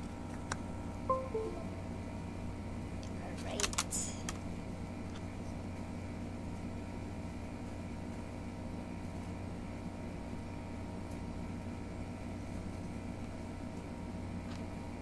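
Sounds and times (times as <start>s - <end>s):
low machine hum: 0.0s - 6.7s.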